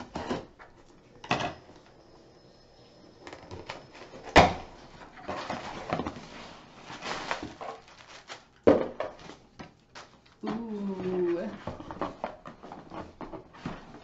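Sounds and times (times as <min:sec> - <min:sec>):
cardboard packaging rustling: 0:03.6 - 0:14.0.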